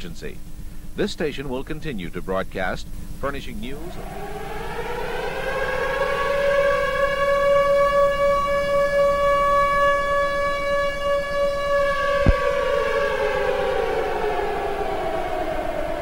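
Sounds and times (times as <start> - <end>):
siren winding down: 3.6 - 16.0.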